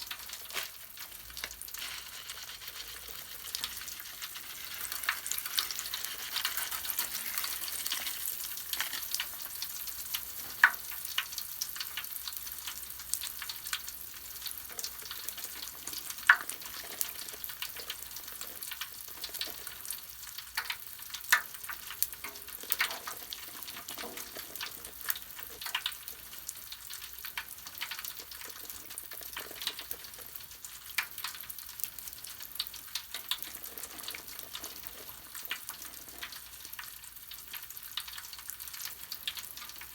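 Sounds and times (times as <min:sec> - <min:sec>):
bubble bath foam crackling: 0:00.0 - 0:39.9.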